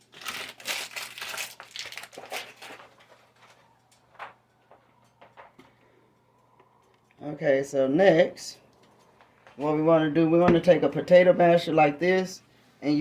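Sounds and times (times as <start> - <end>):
rustling and scraping: 2.0 - 5.8.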